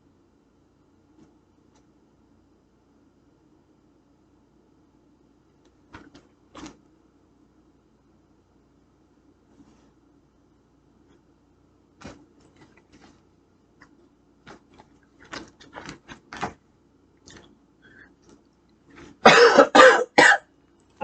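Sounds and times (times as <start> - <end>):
man coughing: 19.2 - 20.5.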